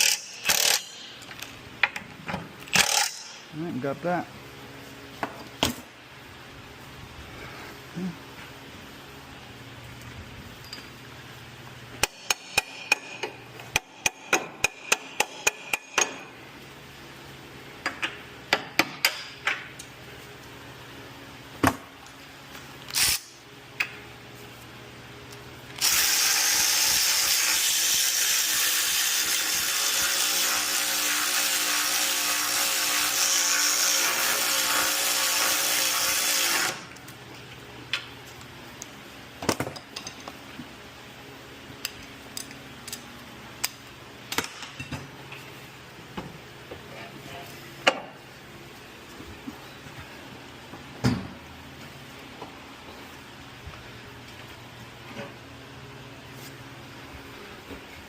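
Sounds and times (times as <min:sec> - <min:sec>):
power tool running: 0:00.0 - 0:01.1, 0:02.7 - 0:03.4, 0:25.8 - 0:36.9
hand tools striking metal: 0:00.0 - 0:01.3, 0:02.7 - 0:03.5, 0:12.0 - 0:16.2.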